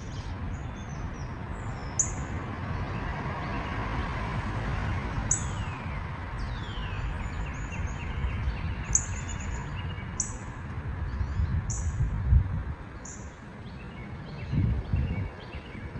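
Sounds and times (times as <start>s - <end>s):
wild birds calling: 5.3s - 10.6s.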